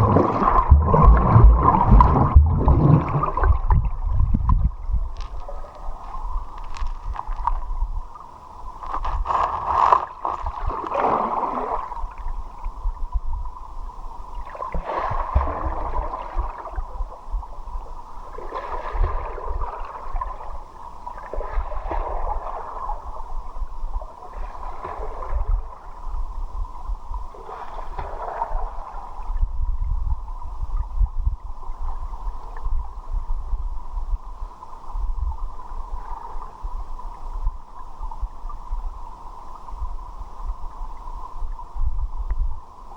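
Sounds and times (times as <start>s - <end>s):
low rumble: 0.0s - 9.7s
muffled water gurgling and sloshing: 0.0s - 42.9s.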